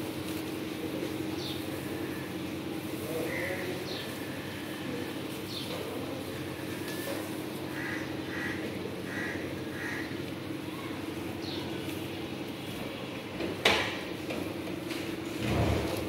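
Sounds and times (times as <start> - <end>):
steady hum: 0.0 - 16.0
cow eating straw: 0.1 - 7.9.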